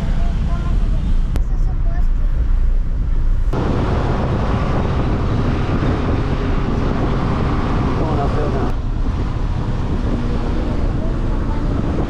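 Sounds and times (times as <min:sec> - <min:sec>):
low rumble: 0:00.0 - 0:12.0
wind noise on microphone: 0:02.9 - 0:12.0.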